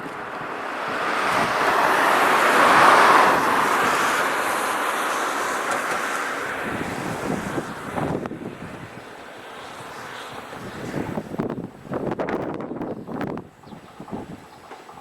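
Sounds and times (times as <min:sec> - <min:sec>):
electric train passing: 0:00.0 - 0:15.0.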